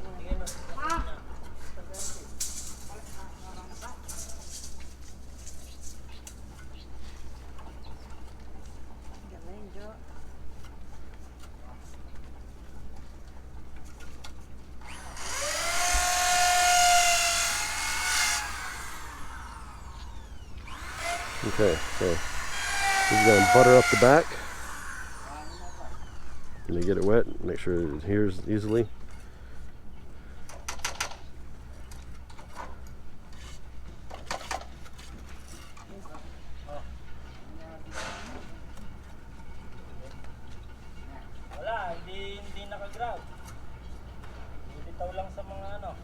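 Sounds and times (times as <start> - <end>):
electric power tool whining: 14.8 - 27.0.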